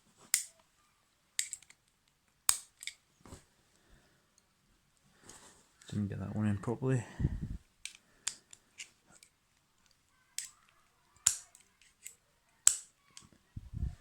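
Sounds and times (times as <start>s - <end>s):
multi-tool metallic clicks: 11.2s - 13.3s.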